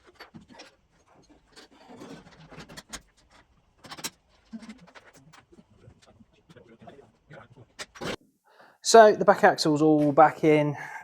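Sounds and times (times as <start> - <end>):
workshop tool clatter: 0.0 - 8.2.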